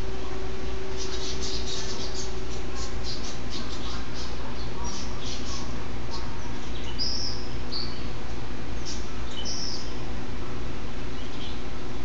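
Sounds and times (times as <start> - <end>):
birds chirping: 0.0 - 12.0
steady low hum: 0.0 - 12.0.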